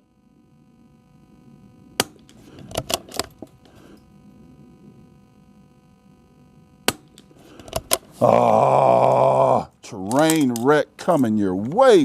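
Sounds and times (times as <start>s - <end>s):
rifle bolt metallic clicks: 10.1s - 10.7s.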